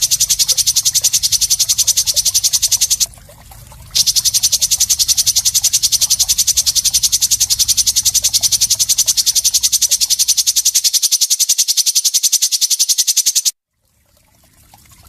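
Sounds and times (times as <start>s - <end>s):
songbird high-pitched trill: 0.0s - 3.1s, 4.0s - 13.5s
low hum: 0.0s - 10.9s.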